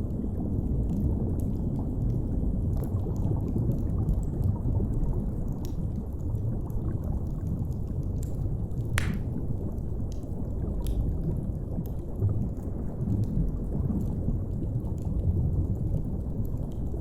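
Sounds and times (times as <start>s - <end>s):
wood fire crackling and popping: 8.2s - 11.2s.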